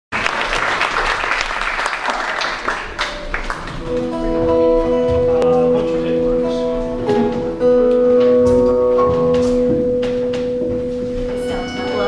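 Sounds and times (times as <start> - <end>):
audience applause: 0.1 - 4.3
band playing held notes: 2.7 - 12.0.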